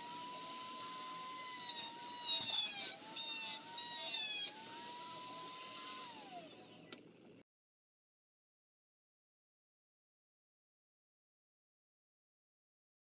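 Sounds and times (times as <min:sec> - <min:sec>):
rotary tool grinding plastic: 0:00.0 - 0:07.0
rotary tool spinning down: 0:00.0 - 0:07.0
rotary tool whining: 0:00.0 - 0:07.2.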